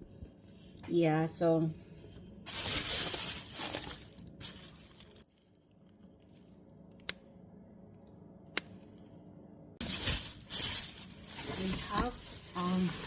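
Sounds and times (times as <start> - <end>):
plastic bag rustling and crinkling: 2.4 - 6.6, 9.8 - 13.0.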